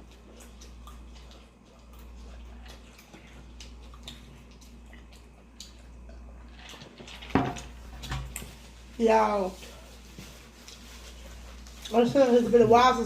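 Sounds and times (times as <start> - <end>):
wet chewing clicks: 0.0 - 7.3
faint low hum: 0.0 - 13.0.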